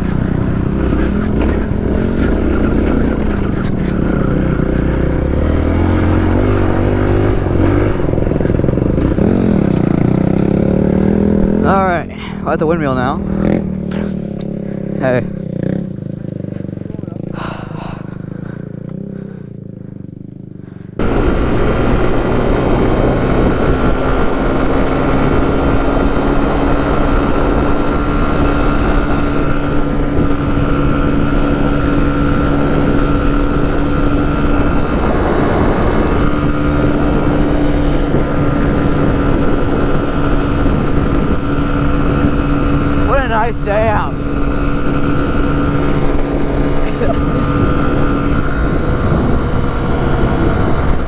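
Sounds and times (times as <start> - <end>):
motorcycle engine running: 0.0 - 51.0.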